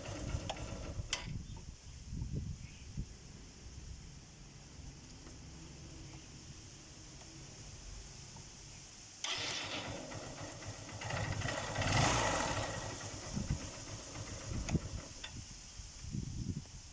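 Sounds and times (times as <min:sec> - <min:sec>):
engine starting and running: 0:00.0 - 0:01.3, 0:09.2 - 0:15.6.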